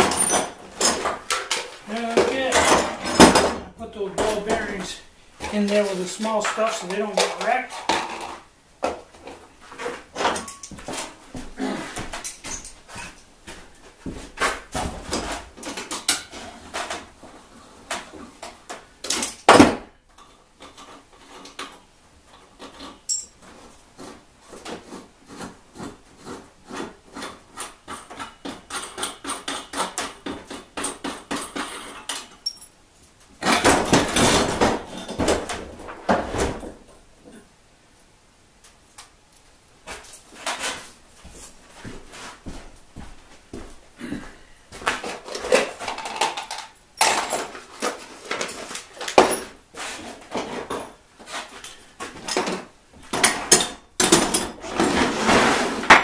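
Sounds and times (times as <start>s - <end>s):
metal parts clinking and knocking: 0.0s - 3.6s, 22.7s - 23.4s, 27.6s - 32.8s, 45.3s - 47.6s.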